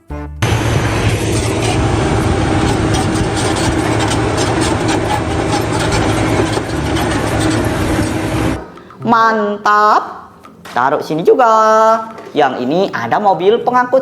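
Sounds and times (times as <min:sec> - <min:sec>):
toy bulldozer motor droning: 0:00.4 - 0:08.6.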